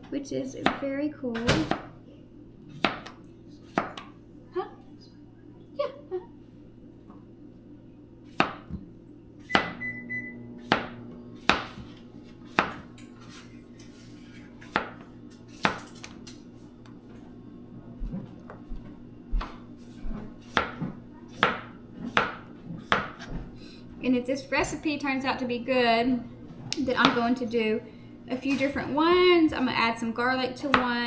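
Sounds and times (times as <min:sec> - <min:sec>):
knife chopping on cutting board: 0:01.6 - 0:01.9, 0:02.7 - 0:04.1, 0:08.3 - 0:08.8, 0:10.6 - 0:13.4, 0:14.6 - 0:15.9, 0:19.3 - 0:23.4.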